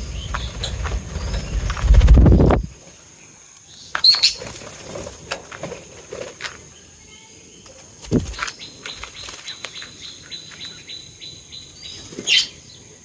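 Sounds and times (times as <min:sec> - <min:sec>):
small birds chirping: 0:00.0 - 0:05.0, 0:05.8 - 0:13.0
dull thump: 0:08.1 - 0:08.5.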